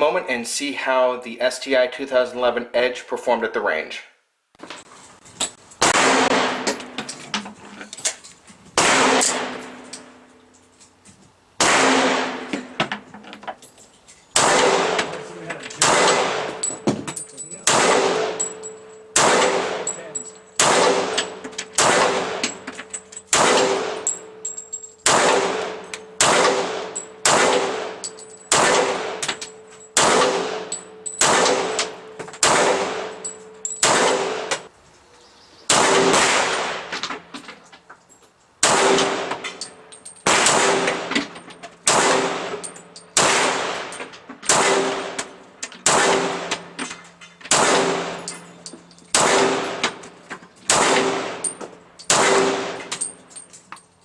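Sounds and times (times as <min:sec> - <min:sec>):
pistol shots: 0:05.8 - 0:07.0, 0:08.8 - 0:09.8, 0:11.6 - 0:12.8, 0:14.3 - 0:16.8, 0:17.6 - 0:24.4, 0:25.0 - 0:34.7, 0:35.7 - 0:37.0, 0:38.6 - 0:39.6, 0:40.2 - 0:41.3, 0:41.9 - 0:46.8, 0:47.5 - 0:48.4, 0:49.1 - 0:50.1, 0:50.7 - 0:53.1
metallic ring: 0:16.5 - 0:17.7, 0:18.3 - 0:19.2, 0:19.8 - 0:20.6, 0:24.0 - 0:26.2, 0:28.0 - 0:28.6, 0:29.2 - 0:30.0, 0:30.6 - 0:32.4, 0:33.1 - 0:33.9, 0:46.7 - 0:49.2.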